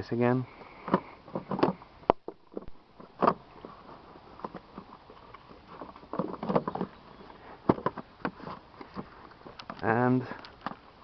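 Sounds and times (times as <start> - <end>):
plastic knocks and rattles: 0.9 - 3.4, 5.7 - 7.0, 7.6 - 9.8.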